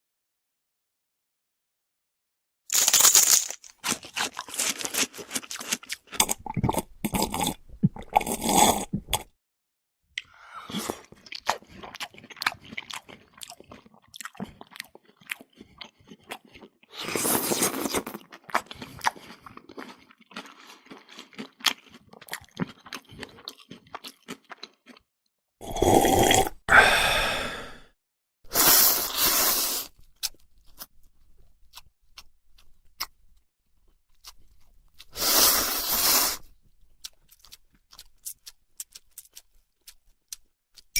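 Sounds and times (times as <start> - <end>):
crunching and chewing: 2.7 - 9.3, 10.7 - 25.1, 29.8 - 40.9.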